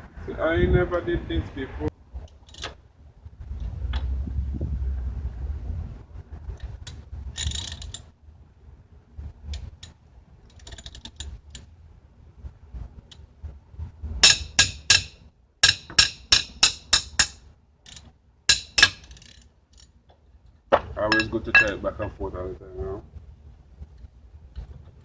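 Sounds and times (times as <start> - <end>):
ratchet wrench clicking: 7.4 - 8.0, 14.2 - 19.4.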